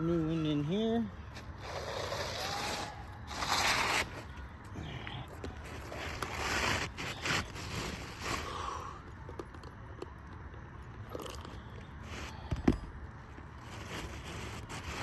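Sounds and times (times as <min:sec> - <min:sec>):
roof shingles scraping and crunching: 0:01.3 - 0:04.4, 0:05.6 - 0:08.5, 0:13.6 - 0:15.0.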